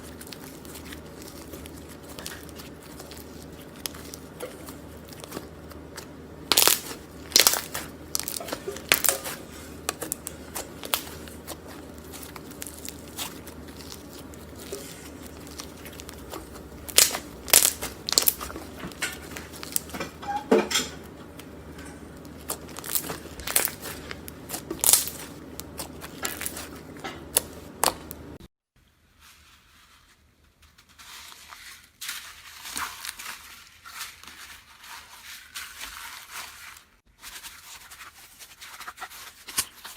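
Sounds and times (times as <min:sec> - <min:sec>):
slime crackling and popping: 0:00.0 - 0:20.0, 0:21.0 - 0:28.4
steady low hum: 0:00.0 - 0:28.4.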